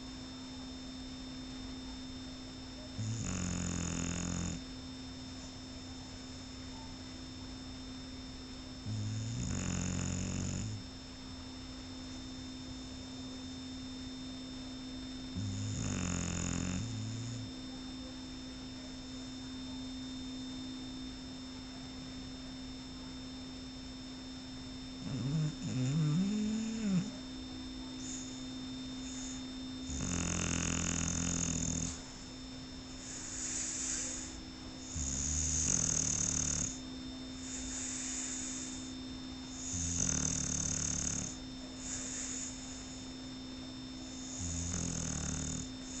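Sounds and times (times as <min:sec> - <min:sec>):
steady low hum: 0:00.0 - 0:46.0
dog snoring: 0:02.9 - 0:04.7, 0:08.8 - 0:10.9, 0:15.4 - 0:17.5, 0:25.0 - 0:27.2, 0:28.0 - 0:28.4, 0:29.0 - 0:32.2, 0:32.9 - 0:36.8, 0:37.4 - 0:38.9, 0:39.5 - 0:43.1, 0:44.0 - 0:46.0
dog breathing softly: 0:33.0 - 0:34.4, 0:37.4 - 0:39.0, 0:41.8 - 0:43.2.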